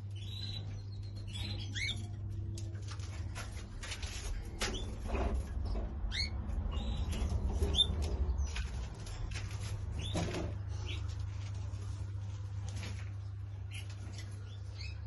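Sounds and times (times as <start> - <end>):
small birds chirping: 0.0 - 15.0
rustling movement: 2.3 - 5.9, 7.0 - 14.5.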